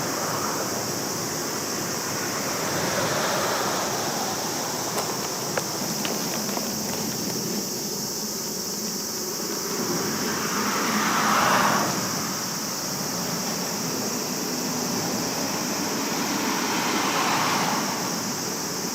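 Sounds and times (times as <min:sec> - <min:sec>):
vehicles passing: 0:00.2 - 0:08.0.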